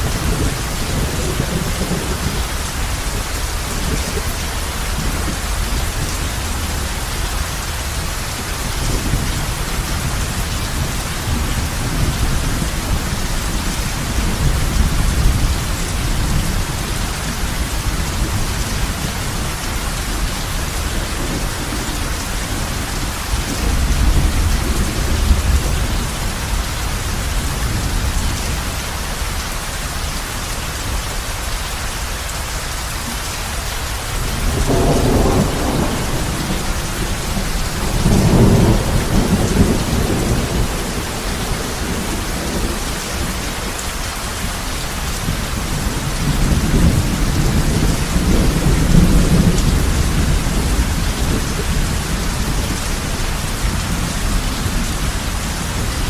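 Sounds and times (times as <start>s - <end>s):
thunder rumbling: 0.0s - 7.0s, 8.6s - 28.8s, 34.1s - 43.8s, 44.4s - 56.0s
heavy rain on a roof: 0.0s - 56.0s.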